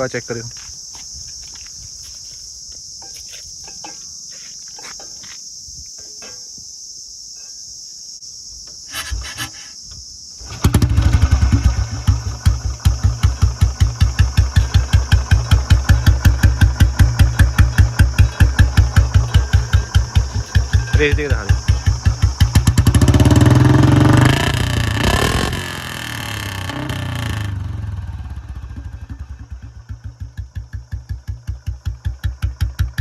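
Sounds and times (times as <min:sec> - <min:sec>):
crickets chirping: 0:00.0 - 0:33.0
motorcycle engine thumping: 0:10.4 - 0:33.0.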